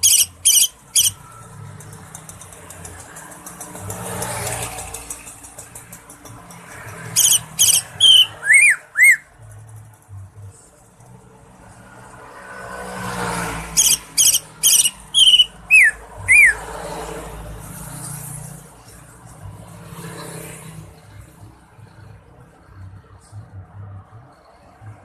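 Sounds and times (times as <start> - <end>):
bird chirping: 0.0 - 1.3, 7.1 - 9.3, 13.8 - 16.7
passing vehicle: 0.0 - 25.0.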